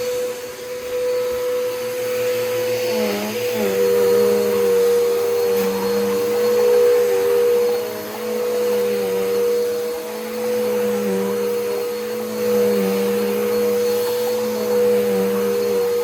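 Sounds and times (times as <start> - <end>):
vacuum cleaner motor whine: 0.0 - 16.0.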